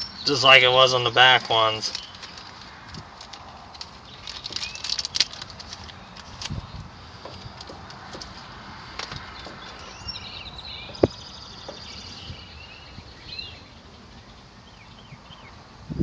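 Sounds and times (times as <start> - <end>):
birds chirping: 0.0 - 15.8
small clicks and knocks: 7.2 - 9.9.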